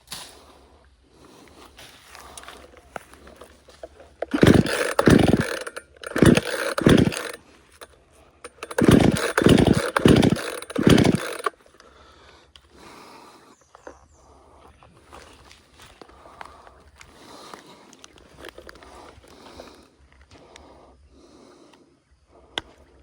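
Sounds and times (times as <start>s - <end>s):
chainsaw engine bursts: 2.5s - 12.1s.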